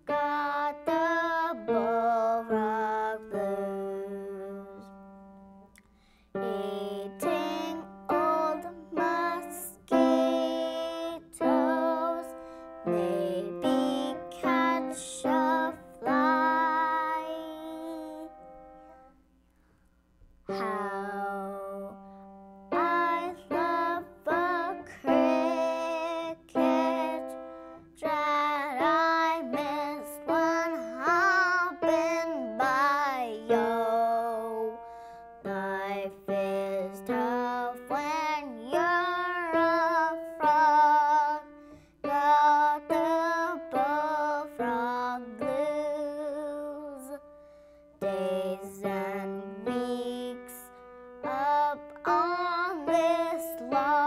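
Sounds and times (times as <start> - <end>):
person singing: 0.0 - 5.0, 6.3 - 18.5, 20.5 - 47.2, 48.0 - 54.0.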